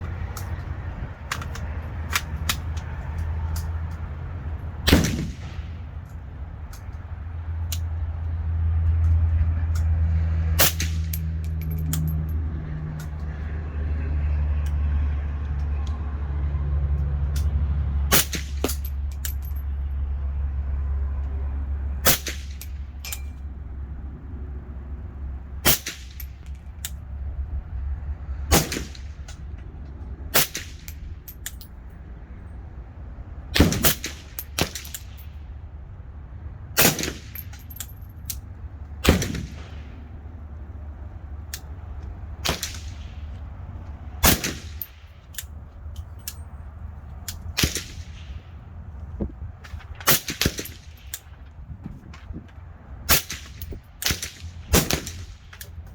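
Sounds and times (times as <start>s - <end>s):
steady low rumble: 0.0s - 16.2s, 17.1s - 55.9s
suppressed rifle shots: 4.9s - 5.8s, 39.0s - 40.0s, 44.2s - 44.9s.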